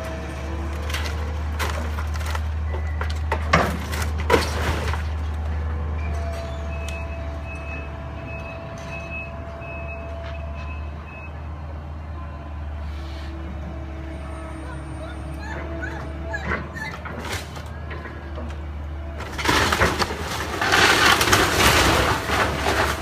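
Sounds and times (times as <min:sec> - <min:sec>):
diesel engine droning: 0:00.0 - 0:23.0
reversing alarm beeping: 0:06.0 - 0:11.5.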